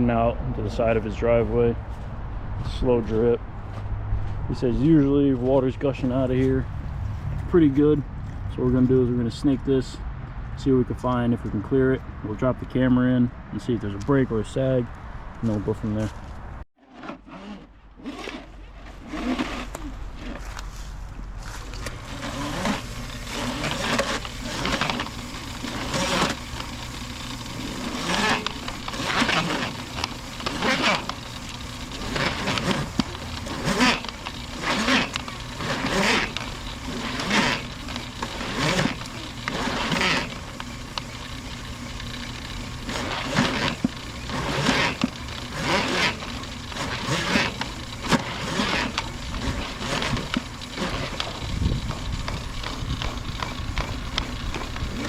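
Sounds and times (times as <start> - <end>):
drain snake motor humming: 21.4 - 55.0
spinning cable clattering: 21.6 - 55.0.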